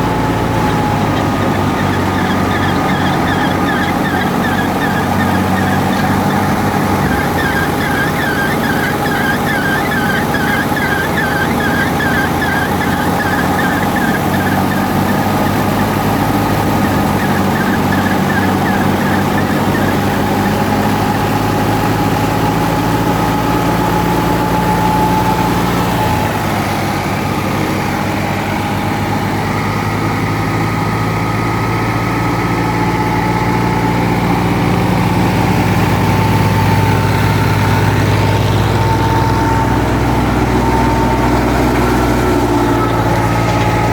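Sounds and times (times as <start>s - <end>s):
thresher engine running: 0.0s - 43.9s
fast repeated chirping: 1.1s - 21.0s.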